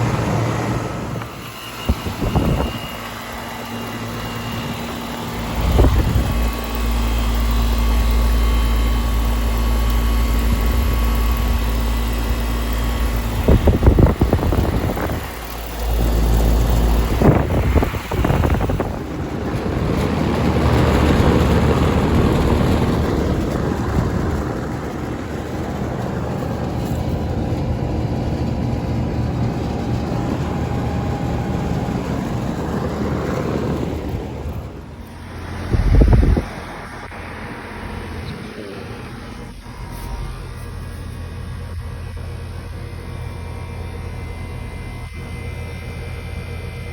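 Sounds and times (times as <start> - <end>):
air conditioner fan whooshing hum: 0.0 - 46.9
heat pump humming: 0.0 - 46.9
wind on microphone: 1.8 - 3.0, 5.5 - 6.5, 13.1 - 26.0, 30.2 - 38.5.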